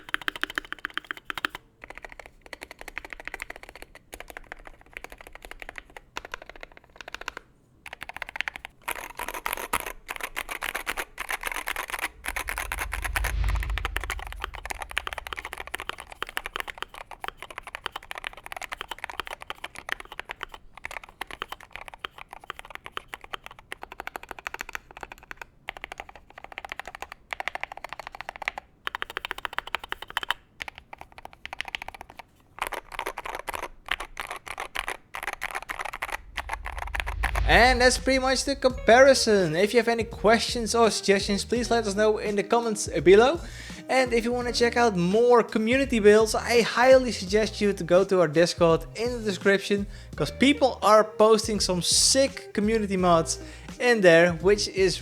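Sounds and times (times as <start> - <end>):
mechanical keyboard typing: 0.0 - 12.5, 15.3 - 36.3
brief low rumble: 11.5 - 16.7, 36.0 - 40.3.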